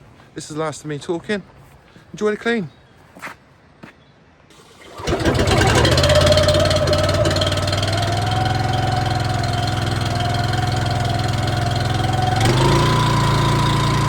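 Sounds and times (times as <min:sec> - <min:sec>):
pressure washer engine running: 0:04.5 - 0:14.0.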